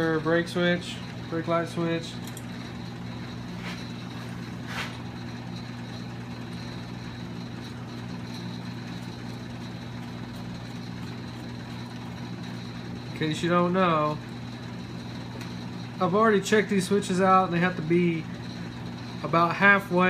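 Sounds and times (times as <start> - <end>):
low machine hum: 0.0 - 20.0.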